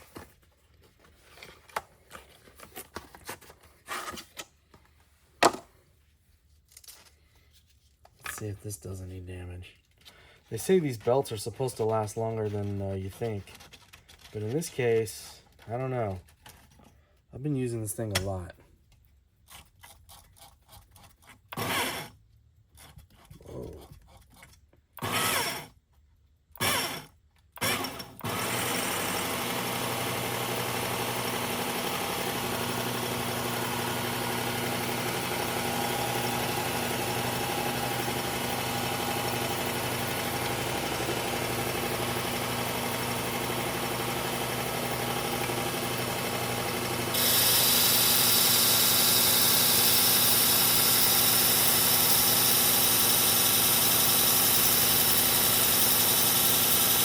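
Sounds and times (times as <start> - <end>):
electric belt sharpener running: 21.6 - 22.1, 25.0 - 25.7, 26.6 - 27.0, 27.6 - 57.0.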